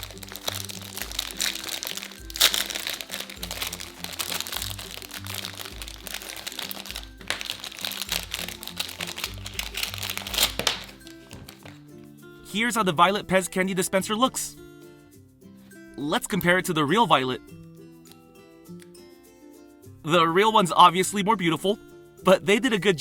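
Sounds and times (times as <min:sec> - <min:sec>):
plastic packaging crinkling: 0:00.0 - 0:11.8
background music: 0:00.0 - 0:23.0.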